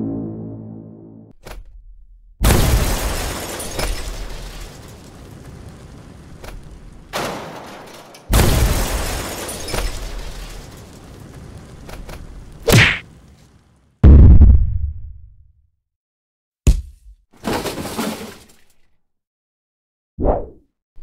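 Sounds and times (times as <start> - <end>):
sound effect booms and impacts: 0.0 - 2.8, 14.0 - 15.5.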